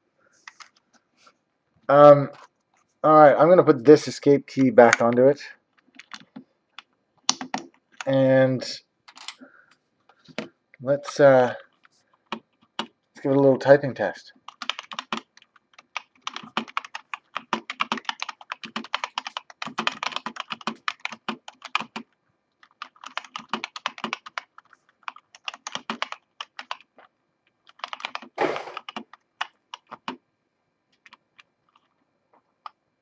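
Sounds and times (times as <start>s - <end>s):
keyboard typing: 0.4s - 0.8s, 4.8s - 8.2s, 11.7s - 13.0s, 14.4s - 30.2s, 30.9s - 32.0s
loud thump: 28.4s - 28.8s.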